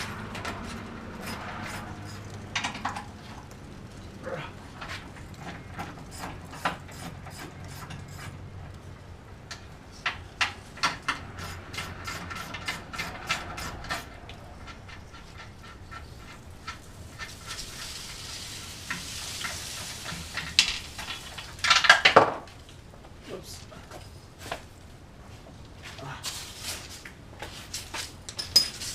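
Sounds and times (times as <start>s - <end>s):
loud clattering scrape: 0.0s - 3.1s.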